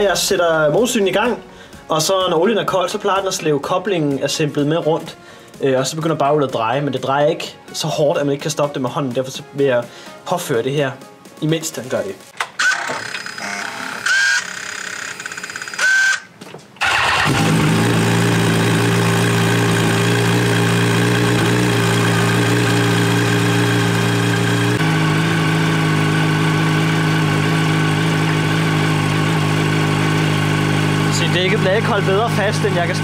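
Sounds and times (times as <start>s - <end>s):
motorcycle engine starting and idling: 16.7s - 33.0s.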